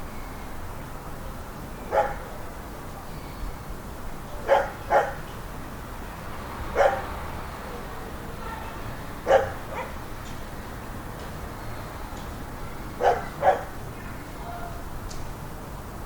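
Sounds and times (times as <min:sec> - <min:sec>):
low suburban ambience rumble: 0:00.0 - 0:16.0
dog barking: 0:01.9 - 0:02.3, 0:04.4 - 0:05.2, 0:06.8 - 0:07.1, 0:09.2 - 0:10.0, 0:13.0 - 0:13.7.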